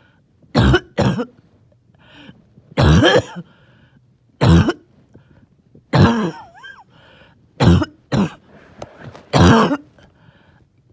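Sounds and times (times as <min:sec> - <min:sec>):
person coughing: 0:00.6 - 0:01.4, 0:02.8 - 0:03.6, 0:04.4 - 0:04.9, 0:05.9 - 0:06.9, 0:07.6 - 0:08.5, 0:09.3 - 0:10.0.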